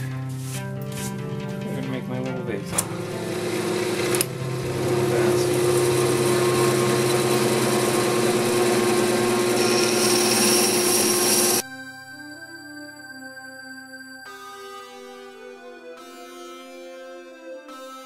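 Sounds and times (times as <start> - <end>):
soft ambient music: 0.0 - 7.9, 11.6 - 18.0
wood lathe humming: 2.7 - 11.6.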